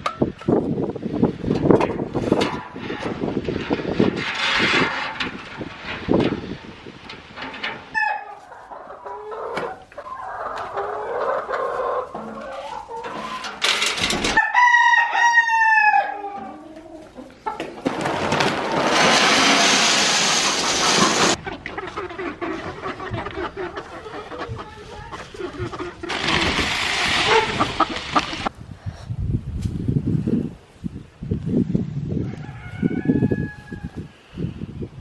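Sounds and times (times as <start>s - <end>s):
rooster crowing: 14.4s - 16.6s, 32.2s - 34.1s
loud rushing noise: 18.2s - 21.4s.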